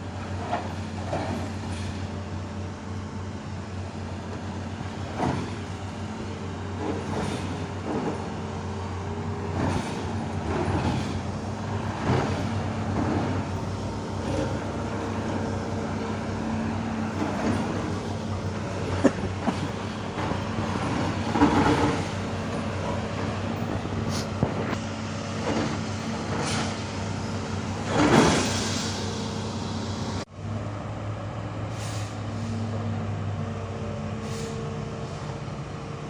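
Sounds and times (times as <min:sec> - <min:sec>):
vehicle engine low hum: 0:00.0 - 0:36.0
short knocks and clatters: 0:05.1 - 0:05.8, 0:17.1 - 0:23.0.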